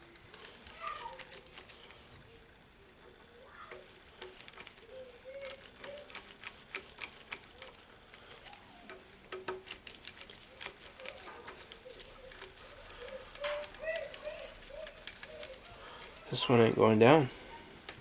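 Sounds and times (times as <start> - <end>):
small metal parts clicking: 3.7 - 16.2.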